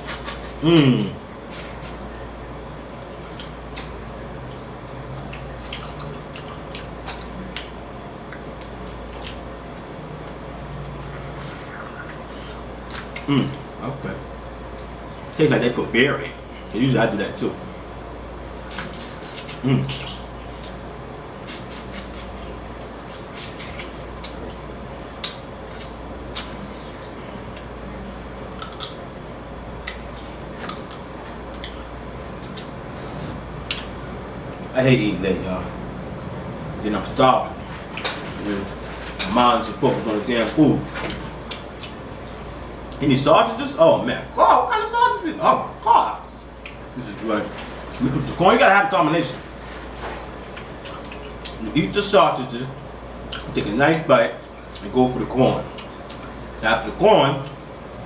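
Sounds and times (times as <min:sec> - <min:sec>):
wet chewing and slurping: 0:00.0 - 0:02.3, 0:03.2 - 0:09.4, 0:49.8 - 0:51.6
steady low hum: 0:00.0 - 0:58.0.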